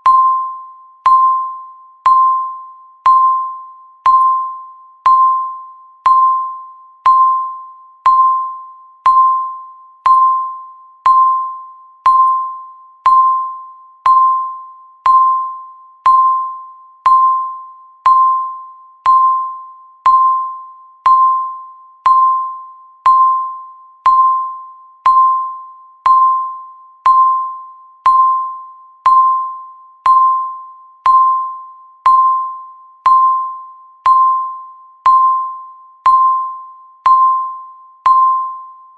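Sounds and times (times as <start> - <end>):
timer beeping: 0.0 - 38.9.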